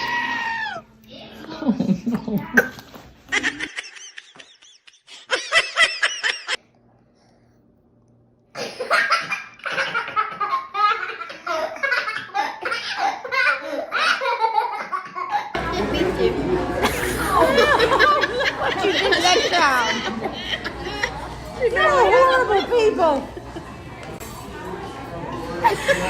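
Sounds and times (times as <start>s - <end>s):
several voices laughing: 15.6s - 22.0s.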